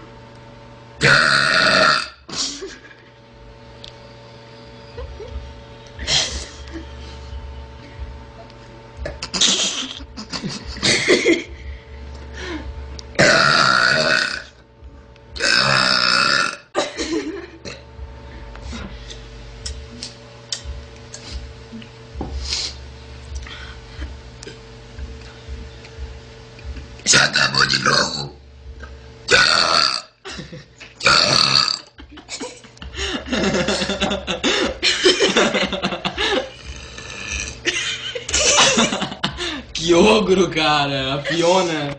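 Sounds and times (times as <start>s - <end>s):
girl belching: 1.0s - 2.2s, 13.2s - 14.6s, 15.4s - 16.8s, 29.3s - 30.2s, 31.0s - 32.0s, 36.6s - 37.6s.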